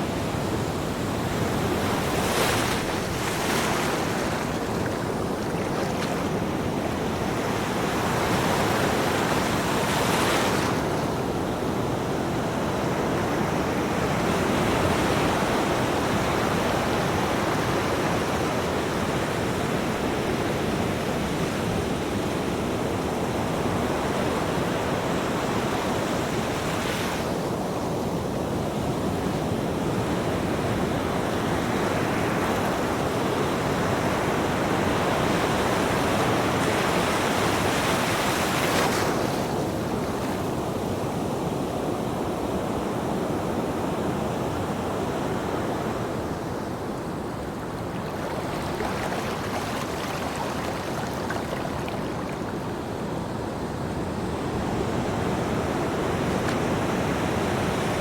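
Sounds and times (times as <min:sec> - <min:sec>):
waves breaking: 0:00.6 - 0:12.2, 0:33.9 - 0:40.9, 0:44.7 - 0:58.0.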